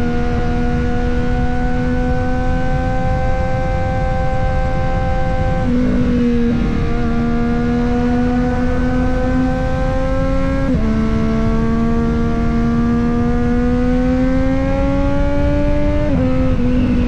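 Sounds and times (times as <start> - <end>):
motorcycle engine accelerating: 0.0 - 17.0
wind rush: 0.0 - 17.0.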